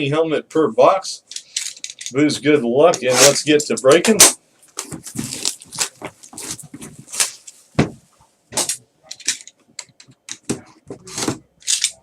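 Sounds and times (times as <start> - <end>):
cardboard and plastic rustling: 4.7 - 8.1.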